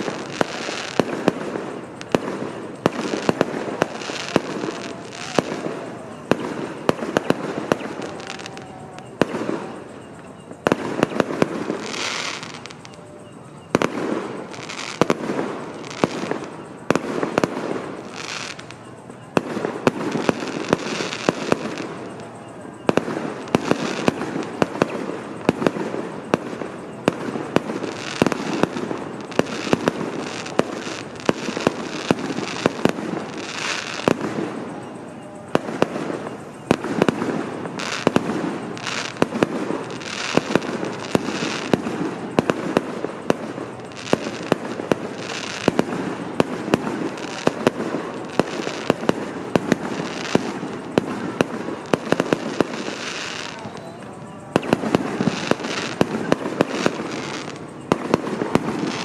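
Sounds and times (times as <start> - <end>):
firework bangs: 0.0 - 59.0
firework crackle: 0.0 - 59.0.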